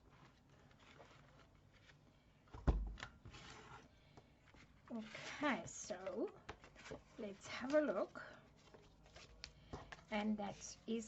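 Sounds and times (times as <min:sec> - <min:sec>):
paper handling: 0:04.6 - 0:11.0.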